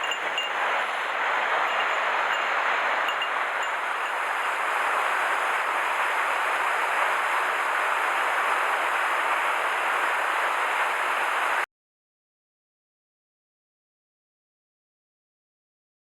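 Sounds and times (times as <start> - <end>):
mountain stream rushing: 0.0 - 11.6.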